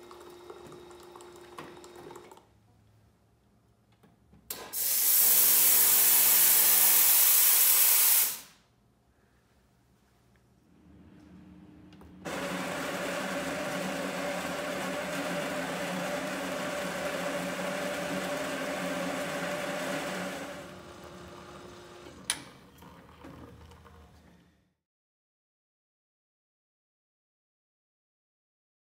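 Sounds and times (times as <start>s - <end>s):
coffee grinder whirring: 0.0s - 2.3s, 12.3s - 22.3s
quiet motor hum: 9.0s - 12.3s.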